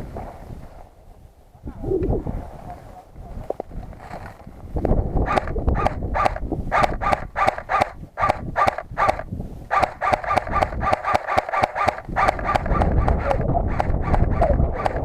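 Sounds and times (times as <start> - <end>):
wind rumble on microphone: 0.0 - 15.0
footsteps crunching on loose ground: 2.6 - 5.0.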